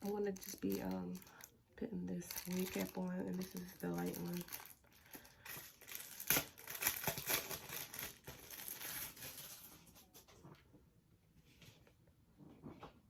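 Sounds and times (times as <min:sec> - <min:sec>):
wig cap crinkling and rustling: 0:00.0 - 0:01.6, 0:02.2 - 0:10.6.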